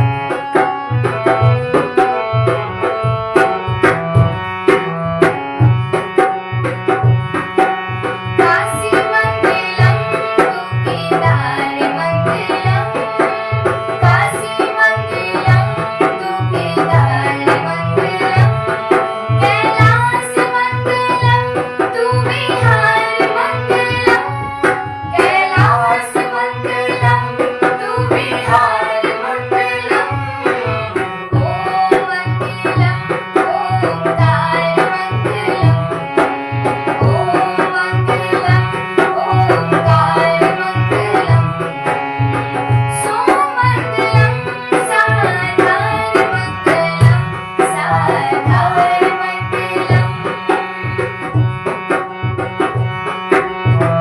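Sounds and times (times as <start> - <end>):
drum rhythm: 0.0 - 54.0
devotional song: 7.9 - 51.1.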